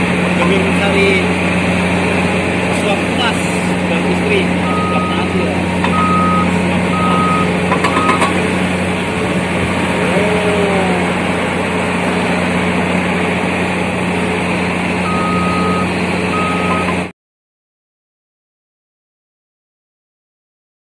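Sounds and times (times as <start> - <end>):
heavy machinery engine drone: 0.0 - 17.1
reversing alarm beeps: 4.6 - 8.4, 15.0 - 17.0.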